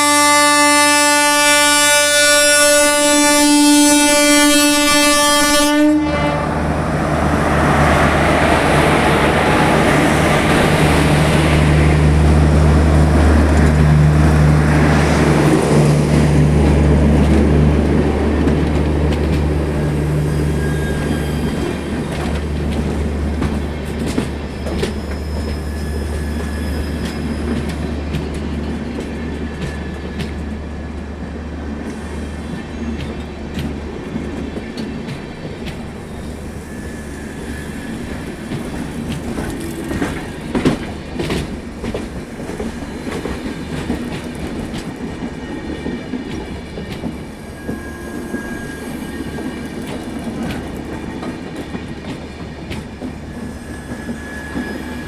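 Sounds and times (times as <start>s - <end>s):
train horn blaring: 0.0s - 7.4s, 47.3s - 49.9s, 53.2s - 55.0s
train rumbling past: 0.0s - 55.0s
wheels clicking over rail joints: 37.9s - 47.8s.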